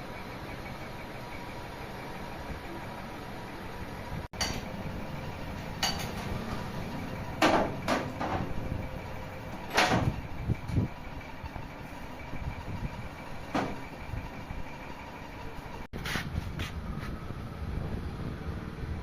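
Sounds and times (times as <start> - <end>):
steady workshop hum: 0.0 - 19.0
knocks and clunks: 7.2 - 11.0, 13.4 - 14.3.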